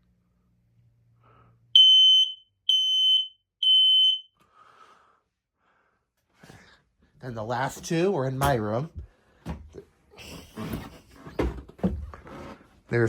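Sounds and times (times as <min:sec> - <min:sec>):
smoke alarm beeps: 0:01.8 - 0:04.4.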